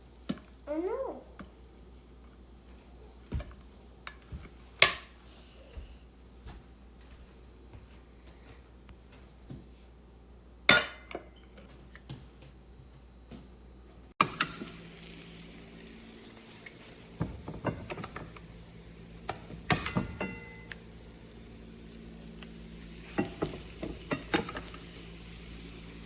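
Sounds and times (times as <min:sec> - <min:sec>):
steady hiss: 0:14.2 - 0:26.0
pans and utensils clinking: 0:17.1 - 0:18.5, 0:19.2 - 0:20.8, 0:22.6 - 0:25.9
pot lid clinking: 0:19.7 - 0:20.7.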